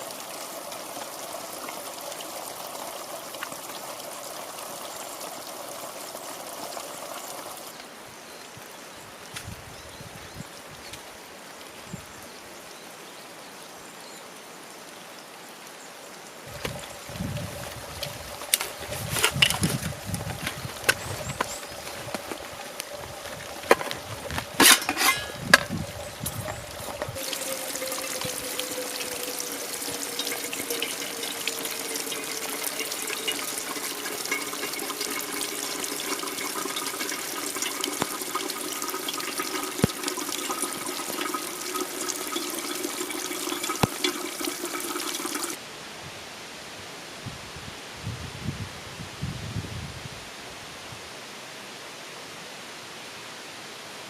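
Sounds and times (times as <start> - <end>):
water pouring: 0.0 - 7.8, 16.4 - 45.6.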